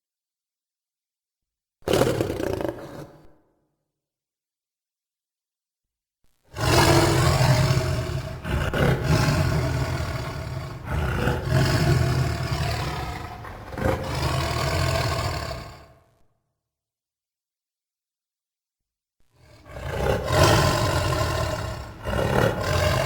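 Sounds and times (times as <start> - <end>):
deep rough creature roar: 6.6 - 16.1, 19.4 - 23.0.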